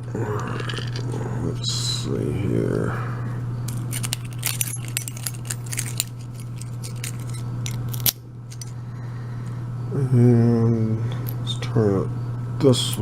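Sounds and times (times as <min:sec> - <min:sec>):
metal lock and tools clicking: 0:03.7 - 0:08.7.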